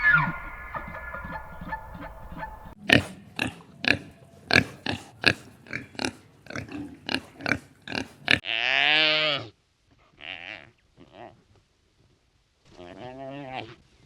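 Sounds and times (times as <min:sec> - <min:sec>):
long bleat-like call: 0:00.0 - 0:01.3, 0:08.4 - 0:09.5
animal grunting: 0:00.0 - 0:08.4.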